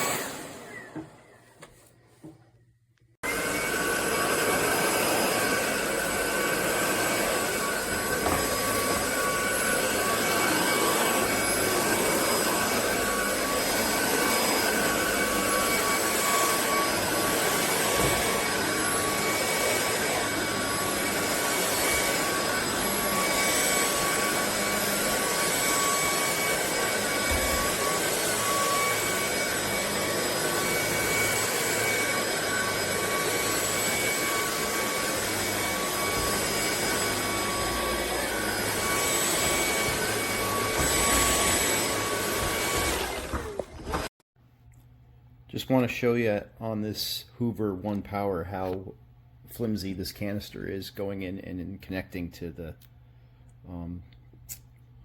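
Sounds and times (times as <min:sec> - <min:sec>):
stick vacuum running: 0:03.2 - 0:44.1.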